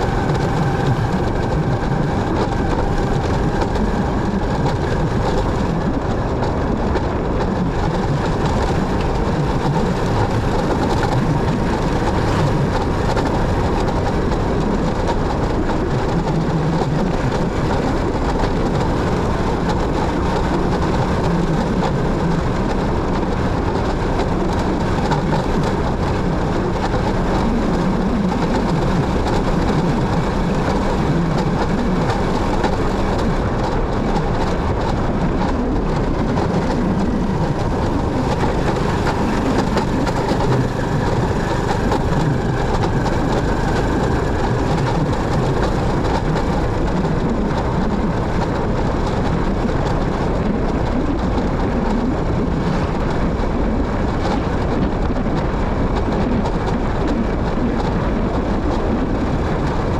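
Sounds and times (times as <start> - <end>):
motorcycle engine rumble: 0.0 - 59.9.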